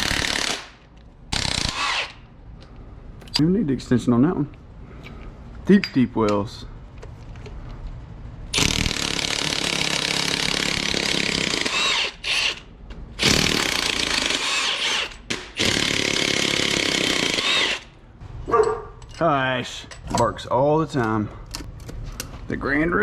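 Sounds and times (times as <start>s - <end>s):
impact wrench hammering bolts: 8.6s - 18.0s.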